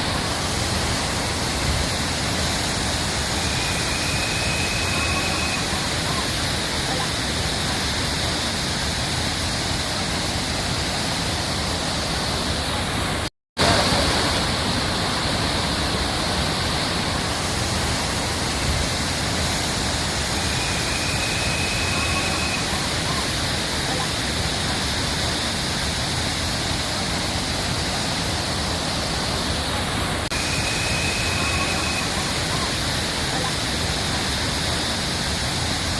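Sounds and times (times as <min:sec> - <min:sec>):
waterfall rushing: 0:00.0 - 0:35.9
faint thin high tone: 0:03.4 - 0:06.3, 0:20.5 - 0:23.3, 0:30.4 - 0:32.8.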